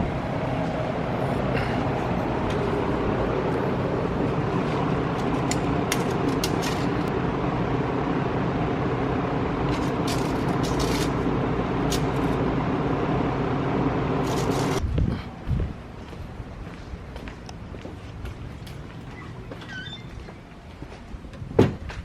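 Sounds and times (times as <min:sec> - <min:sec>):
motor machine running: 0:02.3 - 0:14.8.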